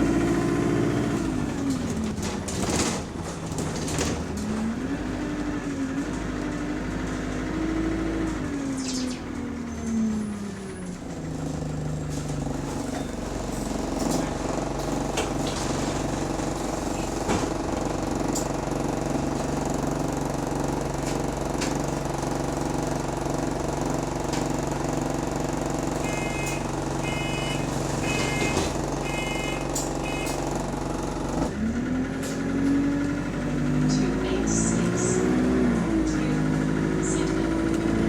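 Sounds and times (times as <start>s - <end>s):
bus engine idling: 0.0s - 38.0s
door buzzer beeping: 25.9s - 30.7s.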